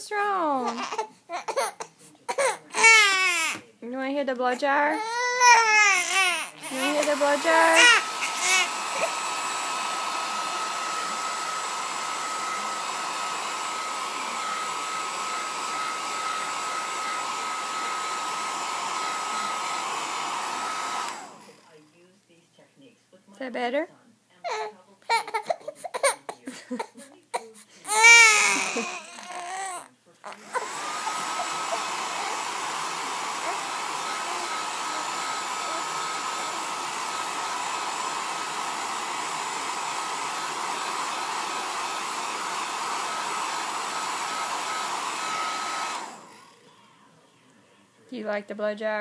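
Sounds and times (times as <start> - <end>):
baby fussing and crying: 0.0 - 3.6, 4.6 - 11.0, 24.4 - 36.8
hair dryer blowing: 2.1 - 21.8, 27.4 - 46.8.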